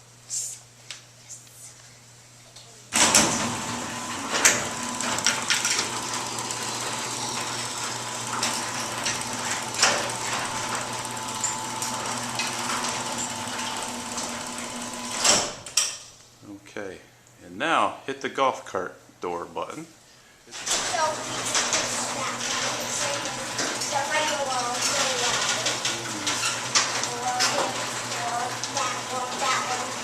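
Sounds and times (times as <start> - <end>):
garage door closing clunk: 2.9 - 16.1, 20.5 - 29.7
garage door motor hum: 2.9 - 16.2, 20.5 - 30.0.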